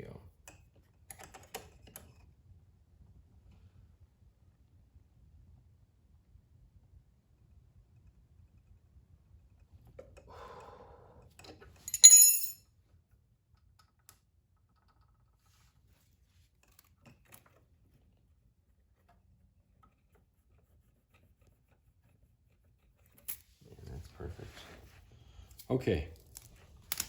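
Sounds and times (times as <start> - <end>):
sharp metallic clink: 11.9 - 12.6.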